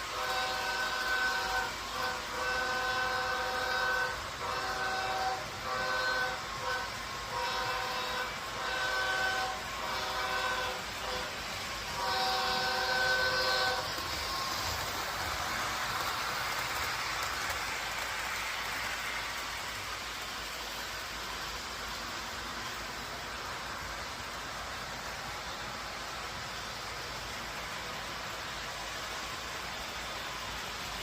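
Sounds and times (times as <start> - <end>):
train horn blasts: 0.0 - 16.2.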